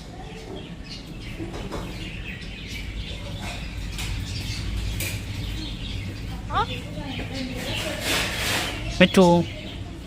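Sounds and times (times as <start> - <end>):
parrot chirping: 5.8 - 6.9.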